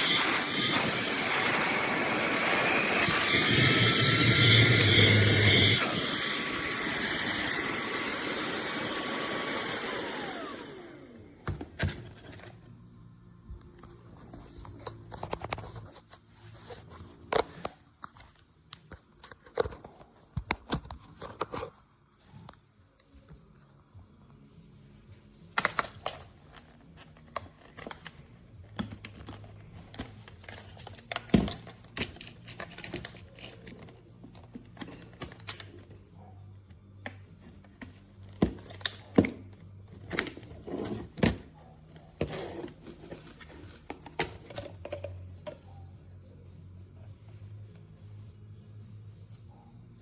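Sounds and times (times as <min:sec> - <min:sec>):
objects being handled: 0:25.6 - 0:36.1, 0:37.0 - 0:45.8.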